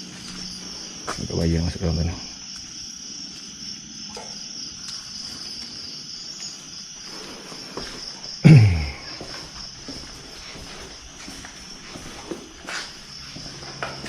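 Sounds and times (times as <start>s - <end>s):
crickets chirping: 0.0s - 14.0s.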